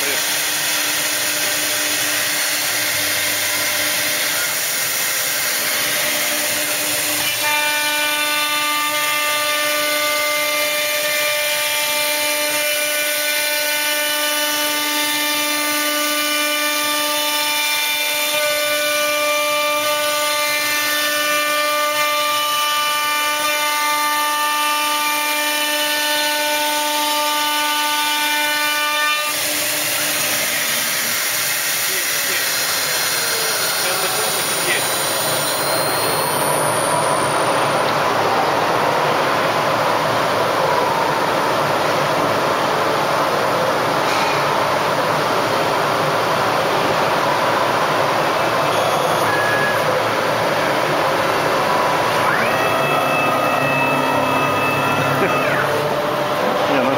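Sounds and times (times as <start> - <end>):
cnc router machine noise: 0.0 - 56.9
spindle whine: 46.4 - 56.9.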